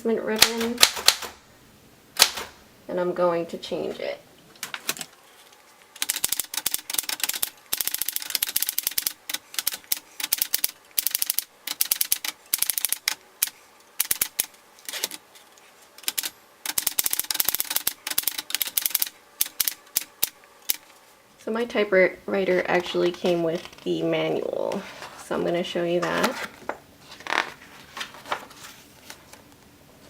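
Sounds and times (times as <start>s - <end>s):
manual typewriter typing: 0.4s - 1.4s, 2.2s - 2.6s, 4.6s - 5.2s, 5.9s - 15.2s, 16.0s - 20.8s.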